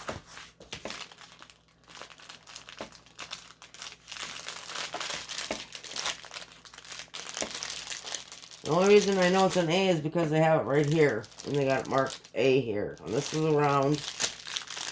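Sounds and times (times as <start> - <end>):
plastic packaging crinkling: 0.1 - 14.9.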